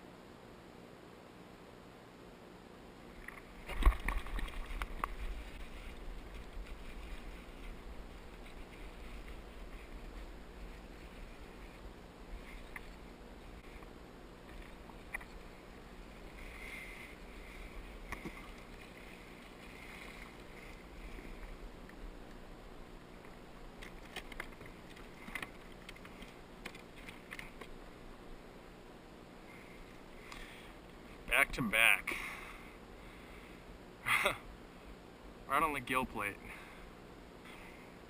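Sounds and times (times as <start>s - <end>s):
steady low rumble: 2.8s - 27.0s.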